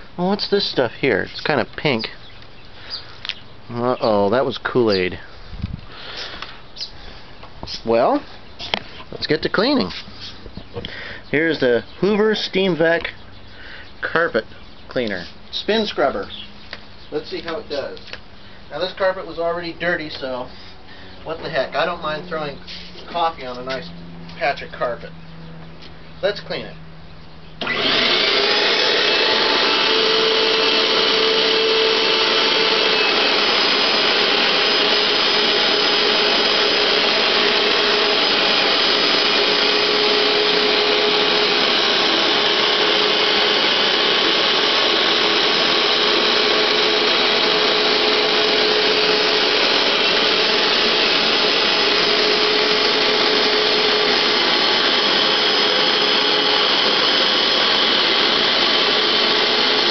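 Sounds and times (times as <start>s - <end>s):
carpet cleaner motor whirring: 27.6s - 59.9s.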